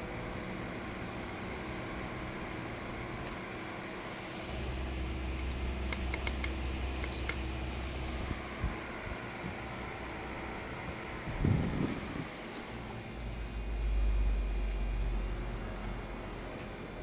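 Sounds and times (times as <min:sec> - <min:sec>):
electric fan humming: 0:00.0 - 0:17.0
sharp clicks: 0:05.9 - 0:07.5.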